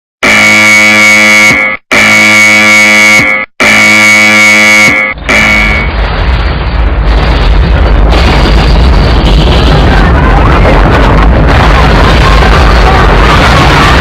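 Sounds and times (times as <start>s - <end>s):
alarm buzzing tones: 0.2s - 6.1s
low rumbling: 5.2s - 14.0s.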